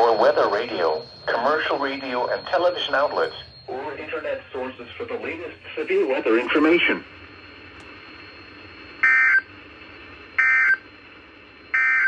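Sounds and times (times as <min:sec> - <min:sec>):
screechy digital data tones: 0:00.0 - 0:07.0
faint radio hiss: 0:00.0 - 0:07.1.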